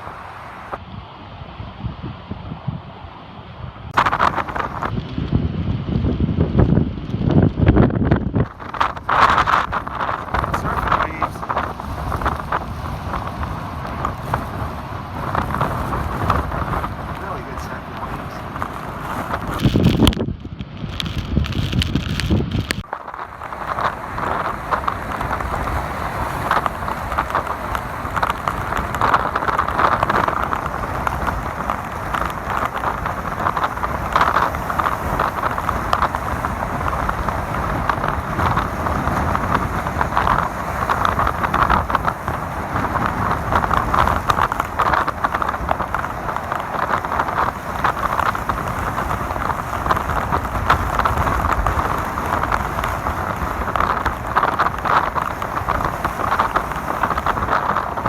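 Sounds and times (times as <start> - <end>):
heavy rain and rushing water: 0.0 - 1.2, 2.6 - 58.0
low rumble: 0.0 - 25.8.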